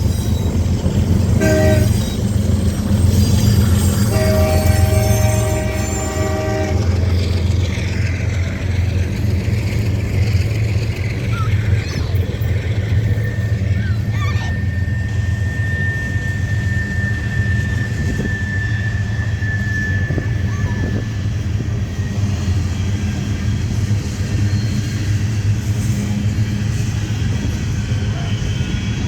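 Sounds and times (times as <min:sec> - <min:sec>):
passing train rumble: 0:00.0 - 0:29.0
locomotive air horn chord: 0:01.3 - 0:02.2, 0:04.0 - 0:07.2.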